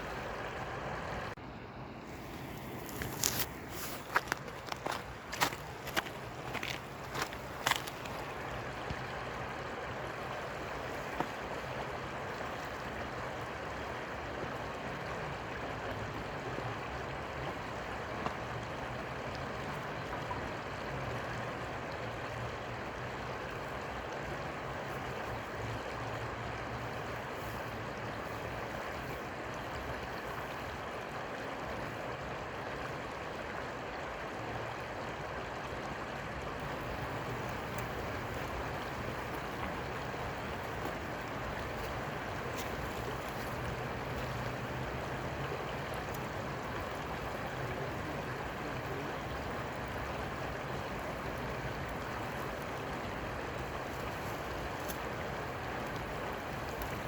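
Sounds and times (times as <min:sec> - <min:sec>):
river water flowing: 0:00.0 - 0:57.0.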